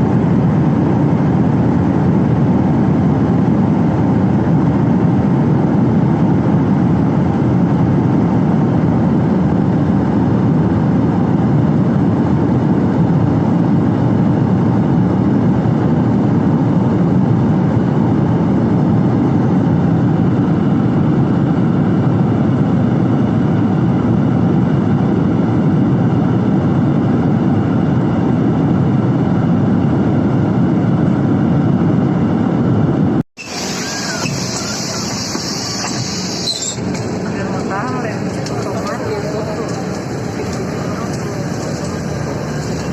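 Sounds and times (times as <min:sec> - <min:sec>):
airliner cabin rumble: 0:00.0 - 0:42.9.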